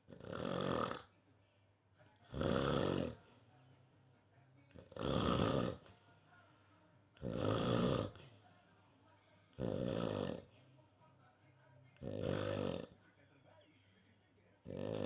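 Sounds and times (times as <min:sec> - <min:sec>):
person snoring: 0:00.1 - 0:01.1, 0:02.3 - 0:03.2, 0:04.9 - 0:05.8, 0:07.2 - 0:08.2, 0:09.6 - 0:10.5, 0:12.0 - 0:12.9, 0:14.7 - 0:15.0.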